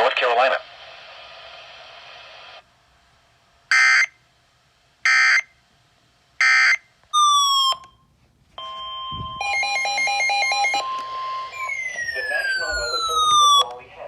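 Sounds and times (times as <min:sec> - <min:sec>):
steady electronic alert tone: 0:08.6 - 0:13.6
tone jumping between pitches: 0:09.1 - 0:13.7
tone gliding down: 0:09.2 - 0:13.7
screechy digital data bursts: 0:09.6 - 0:13.7.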